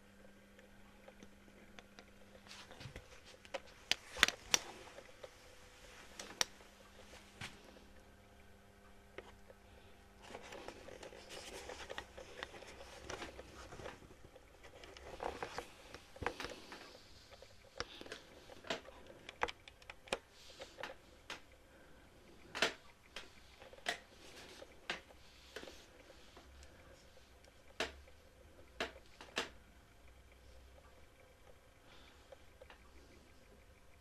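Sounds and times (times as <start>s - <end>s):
handling rustling: 10.2s - 21.0s.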